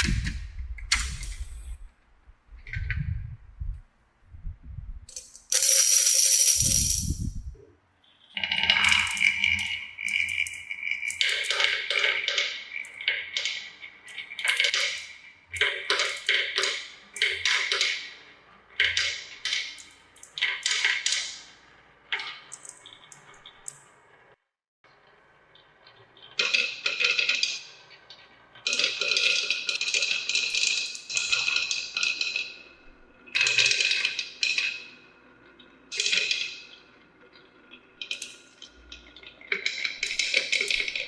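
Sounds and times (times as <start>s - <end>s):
marbles rolling down plastic track: 5.1s - 7.4s, 8.4s - 23.7s, 26.4s - 27.9s, 28.6s - 41.0s.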